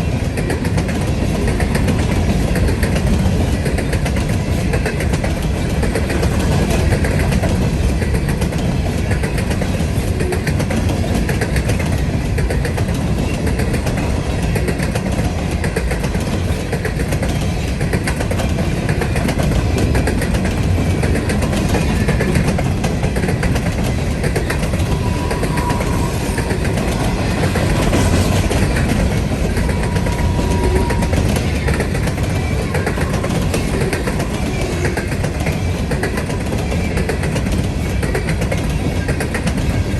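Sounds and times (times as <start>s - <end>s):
train rumbling past on rails: 0.0s - 39.9s.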